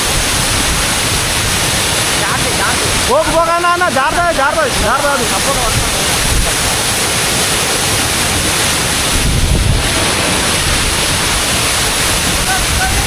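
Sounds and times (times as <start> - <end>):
waterfall rushing: 0.0 - 13.0
wind buffeting microphone: 0.0 - 13.0.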